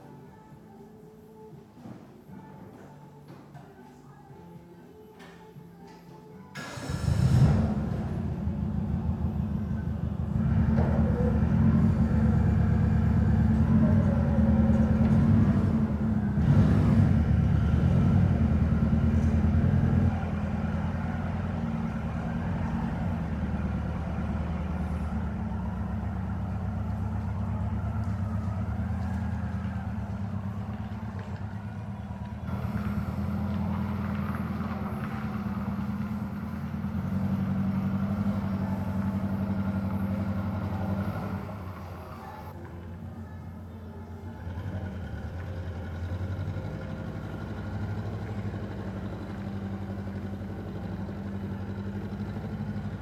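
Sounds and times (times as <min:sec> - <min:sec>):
combustion engine running: 0:06.6 - 0:53.0.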